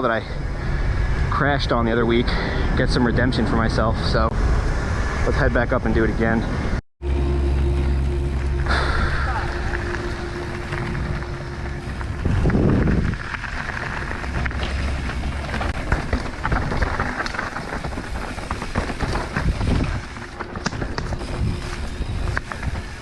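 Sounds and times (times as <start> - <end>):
bike crackling and rattling: 0.0 - 23.0
wind buffeting microphone: 10.0 - 23.0.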